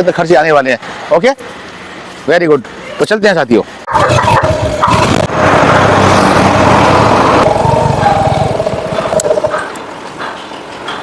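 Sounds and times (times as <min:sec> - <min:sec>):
motorcycle engine running: 0:04.0 - 0:09.8
wind rush on microphone: 0:04.2 - 0:09.7.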